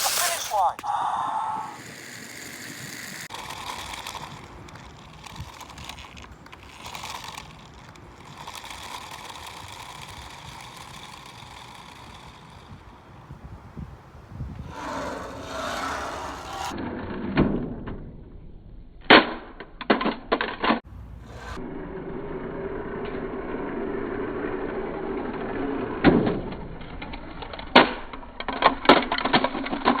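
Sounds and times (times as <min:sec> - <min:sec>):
plastic toys clacking: 0:00.0 - 0:13.0, 0:26.8 - 0:30.0.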